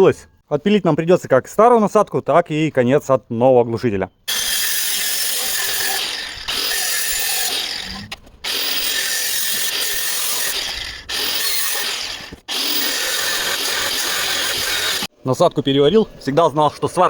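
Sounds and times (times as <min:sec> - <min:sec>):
power tool cutting metal pipe: 0:04.3 - 0:15.1.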